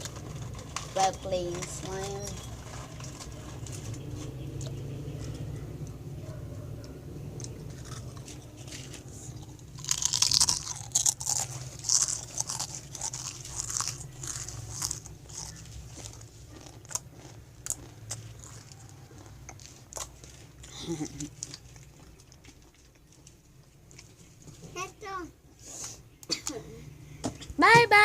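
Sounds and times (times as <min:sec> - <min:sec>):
person chewing crunchy snack: 0:07.3 - 0:24.6.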